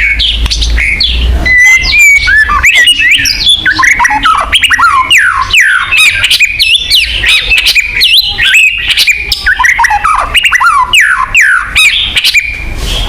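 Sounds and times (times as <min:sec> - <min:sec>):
songbird whistling song: 0:00.0 - 0:13.0
sharp bird clicks: 0:00.1 - 0:01.0.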